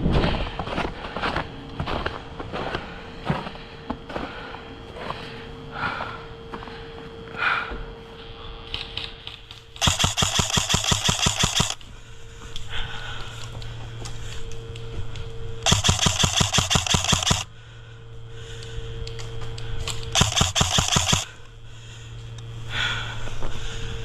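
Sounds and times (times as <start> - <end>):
airsoft gun full-auto bursts: 9.8 - 11.8, 15.6 - 17.5, 20.2 - 21.4.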